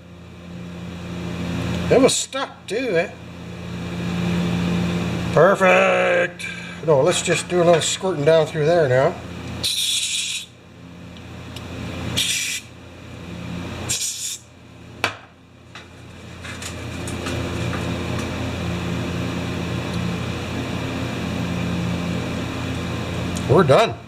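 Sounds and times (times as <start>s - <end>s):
low steady hum: 0.0s - 24.0s
hissing spray squirts: 12.2s - 12.7s, 13.9s - 14.4s.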